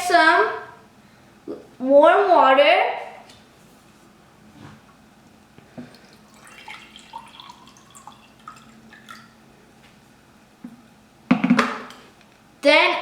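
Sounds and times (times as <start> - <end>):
water pouring and trickling: 5.9 - 9.4.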